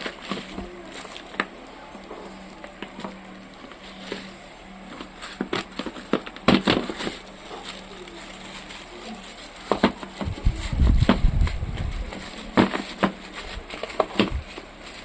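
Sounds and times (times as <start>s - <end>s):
low handling rumble: 7.1s - 13.7s.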